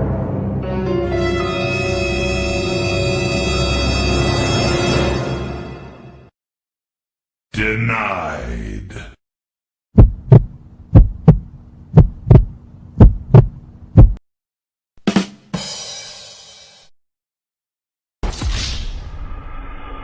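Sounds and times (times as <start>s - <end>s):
heartbeat thumps: 10.0s - 14.2s.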